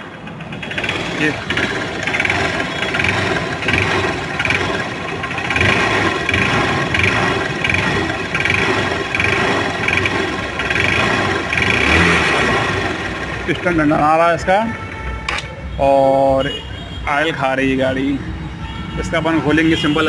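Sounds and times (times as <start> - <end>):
motorcycle engine running: 0.0 - 14.2
pulsing engine noise: 0.0 - 14.9.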